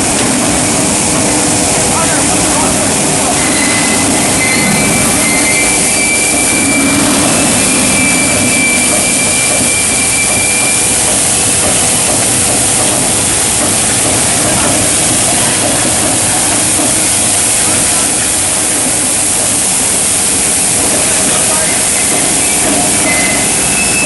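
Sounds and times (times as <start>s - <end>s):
welding line running noise: 0.0s - 24.0s
faint high whistling tones: 3.3s - 11.0s, 21.4s - 24.0s.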